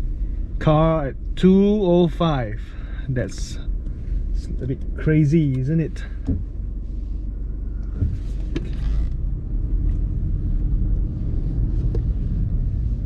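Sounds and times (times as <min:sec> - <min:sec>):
car engine low rumble: 0:00.0 - 0:13.0.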